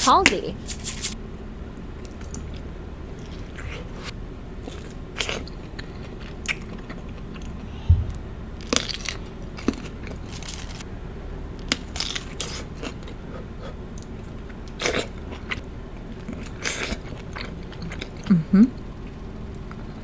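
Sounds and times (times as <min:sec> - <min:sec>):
dull thump: 0:07.7 - 0:08.4.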